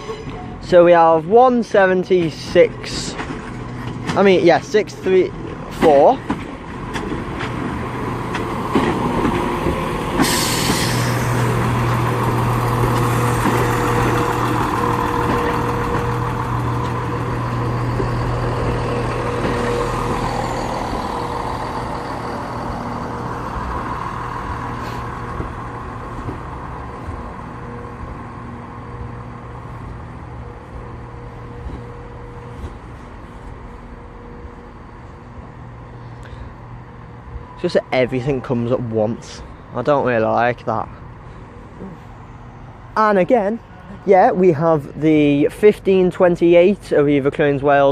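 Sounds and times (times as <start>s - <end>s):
train diesel engines humming: 0.0s - 47.9s
air hiss: 10.2s - 11.5s.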